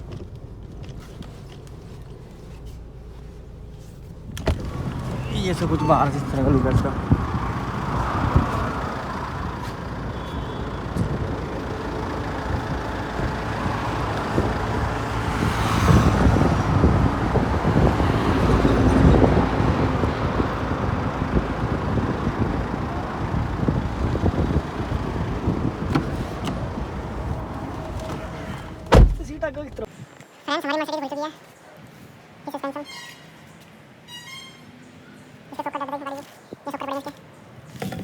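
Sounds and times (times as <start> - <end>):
motor vehicle running: 0.0 - 29.9.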